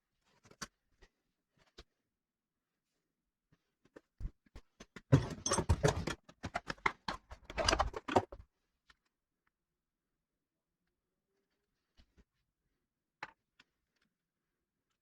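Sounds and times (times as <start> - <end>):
hard objects clicking and knocking: 4.9 - 8.4.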